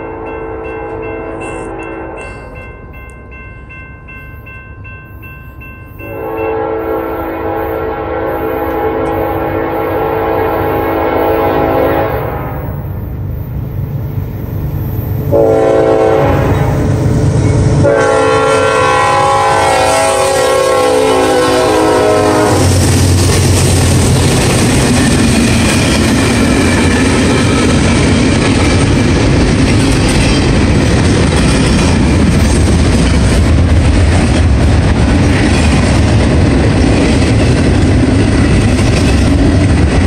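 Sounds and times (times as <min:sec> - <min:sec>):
locomotive air horn blasts: 0:06.0 - 0:12.6, 0:15.3 - 0:16.9, 0:17.8 - 0:22.9
locomotive rumble: 0:06.1 - 0:40.0.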